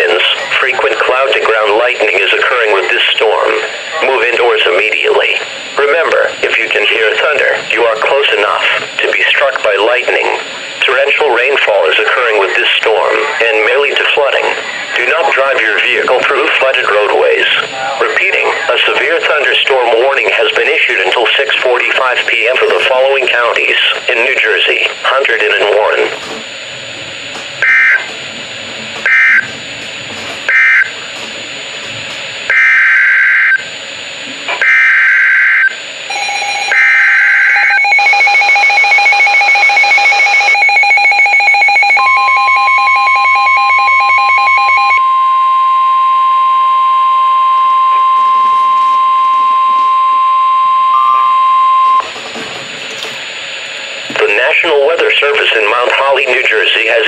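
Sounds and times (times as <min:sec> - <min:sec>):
rapid electronic beeping: 0:00.0 - 0:31.2, 0:31.9 - 0:52.2
buzzing data bursts: 0:23.3 - 0:31.2
steady single-pitch alert tone: 0:34.6 - 0:52.1.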